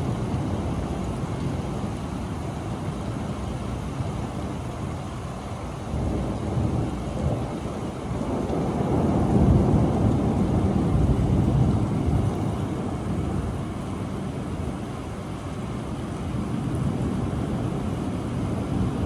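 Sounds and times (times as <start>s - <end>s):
low rumble of thunder: 0.0s - 19.0s
rain: 0.0s - 19.0s.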